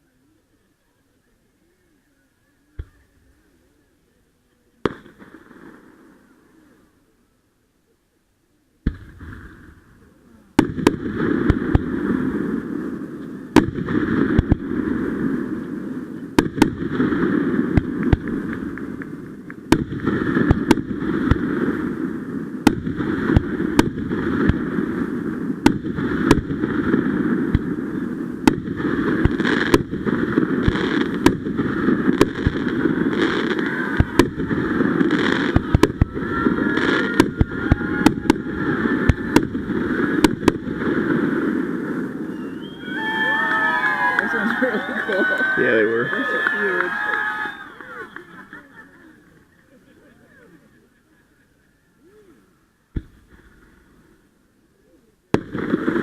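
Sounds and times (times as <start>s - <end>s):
fireworks crackling and banging: 4.7s - 6.9s, 8.8s - 50.2s, 52.9s - 54.4s, 55.3s - 56.0s
firework whistle: 42.1s - 45.4s.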